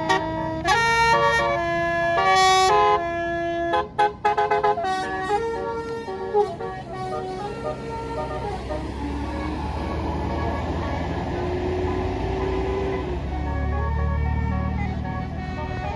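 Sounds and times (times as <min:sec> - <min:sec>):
bus musical air horn tune: 0:00.0 - 0:15.9.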